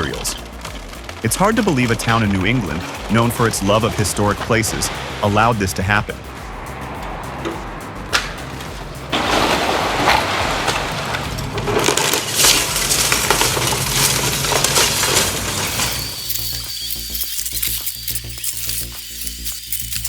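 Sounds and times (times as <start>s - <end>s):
debris crushing and breaking: 0.0s - 5.2s, 9.1s - 20.0s
glass breaking: 9.7s - 20.0s.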